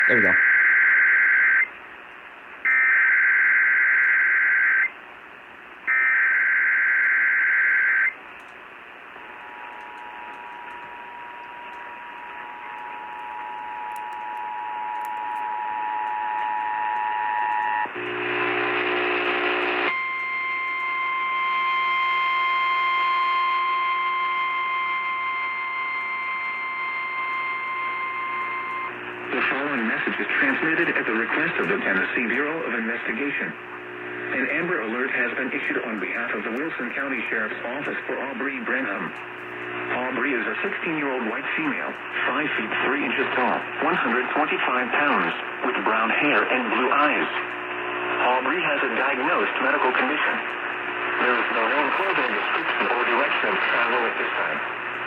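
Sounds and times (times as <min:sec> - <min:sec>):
radio static hiss: 0:00.0 - 0:55.0.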